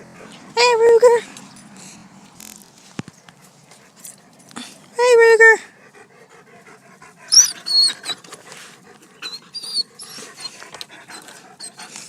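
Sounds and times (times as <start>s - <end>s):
faint dog panting: 0.0s - 2.2s, 3.3s - 12.0s
dog whining: 7.3s - 8.4s, 9.1s - 11.9s.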